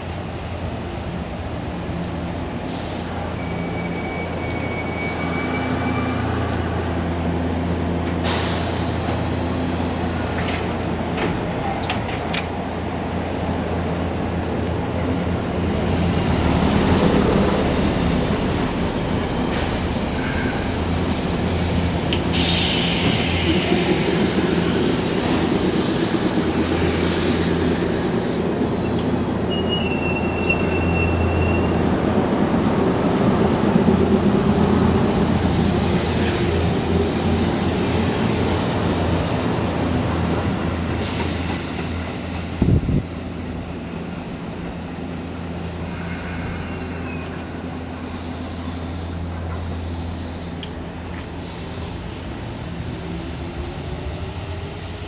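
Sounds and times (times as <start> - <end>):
electric train rumbling: 0.0 - 55.0
high squeal: 3.1 - 7.0, 26.6 - 31.8, 45.8 - 48.6.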